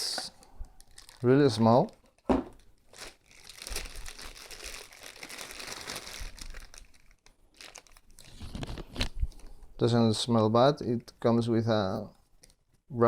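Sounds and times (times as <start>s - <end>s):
packaging crinkling: 0.8s - 9.1s.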